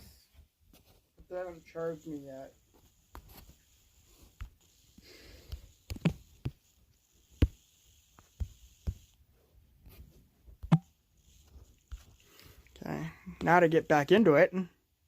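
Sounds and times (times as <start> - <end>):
faint hiss: 1.2 - 9.5
computer clicks and taps: 10.6 - 10.9.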